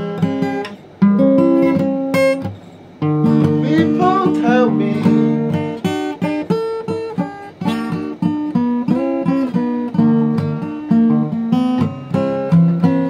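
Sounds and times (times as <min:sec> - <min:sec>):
acoustic guitar playing blues: 0:00.0 - 0:13.0.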